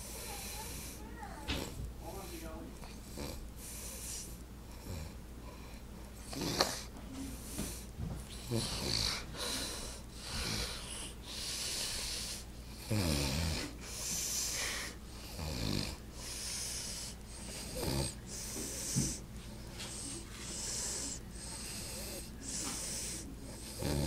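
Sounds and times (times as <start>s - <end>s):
man snoring: 3.1s - 3.4s, 4.8s - 5.2s, 6.3s - 6.9s, 8.4s - 9.6s, 12.8s - 18.2s, 20.6s - 24.0s.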